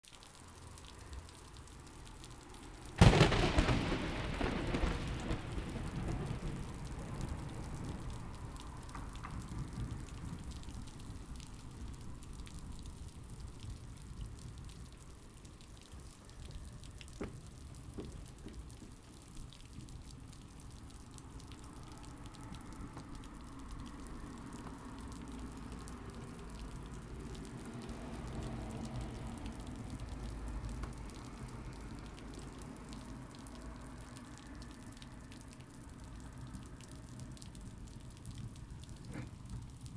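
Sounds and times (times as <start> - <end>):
steady rain: 0.0 - 39.9
thunderclap: 3.0 - 10.9
low thunder rumbling: 3.0 - 13.5.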